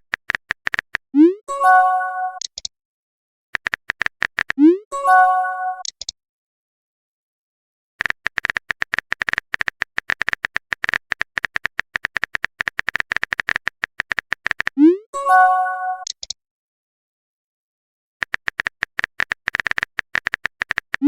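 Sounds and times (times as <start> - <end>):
phone keyboard key clicks: 0.0 - 1.0, 3.6 - 4.6, 8.0 - 14.8, 18.2 - 21.0
message notification tone: 1.2 - 2.4, 4.6 - 5.9, 14.8 - 16.1.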